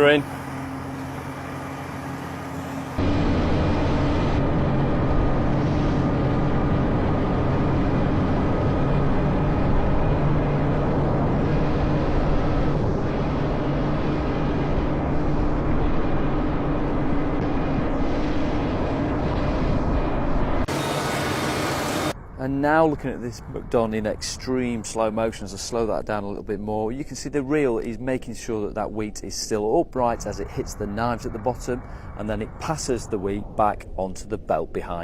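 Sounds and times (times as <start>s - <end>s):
combine harvester diesel drone: 0.0s - 22.2s.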